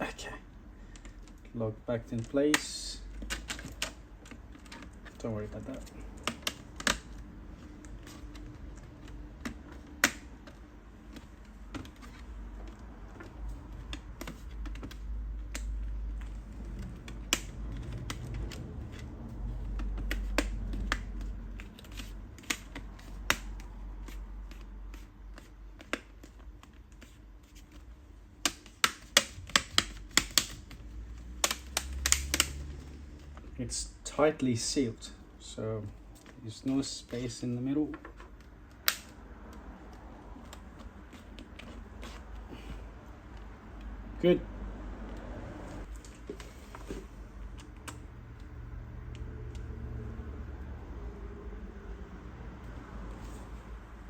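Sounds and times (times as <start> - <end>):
plastic clips snapping: 28.4 - 32.7.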